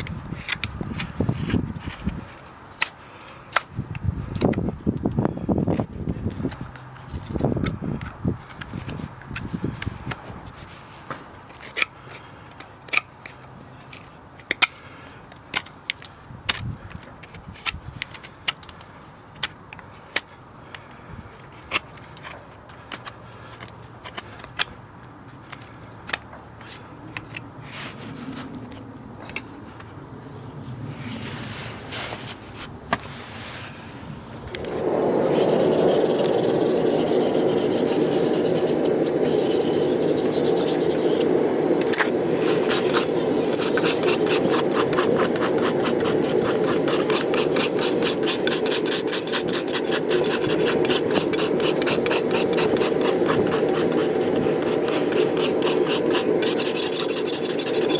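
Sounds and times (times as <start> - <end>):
rasp scraping hoof: 35.2 - 57.9.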